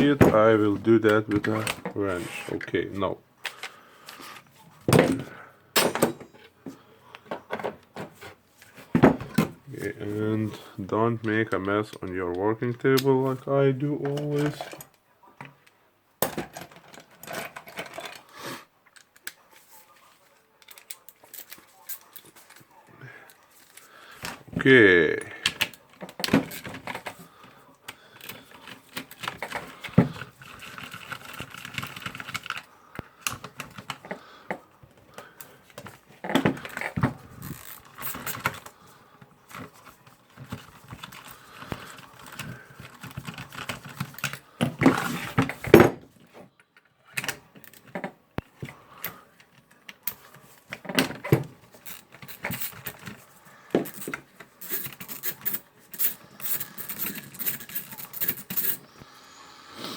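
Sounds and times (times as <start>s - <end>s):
metal tools clinking and rattling: 16.2s - 18.2s, 36.5s - 38.7s, 51.8s - 53.2s, 53.8s - 58.9s.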